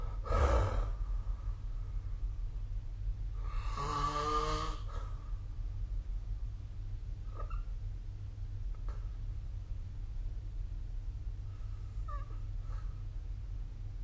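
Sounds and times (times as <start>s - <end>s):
person snoring: 0.0s - 1.0s, 3.4s - 5.0s
steady low hum: 0.0s - 14.0s.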